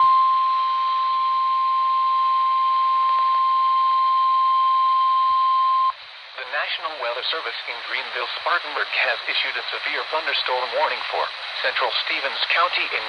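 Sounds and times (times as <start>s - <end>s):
radio reception hiss: 5.0s - 13.0s.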